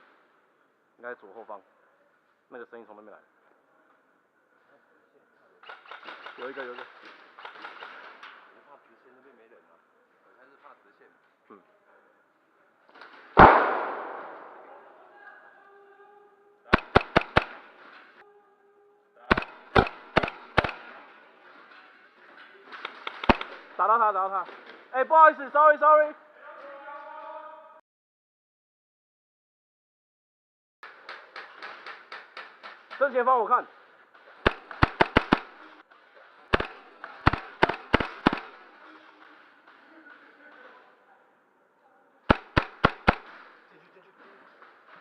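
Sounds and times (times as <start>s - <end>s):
airsoft pistol shots: 13.4s - 14.9s, 16.7s - 17.8s, 19.3s - 21.1s, 23.1s - 23.6s, 34.4s - 35.6s, 36.5s - 38.6s, 42.3s - 43.4s.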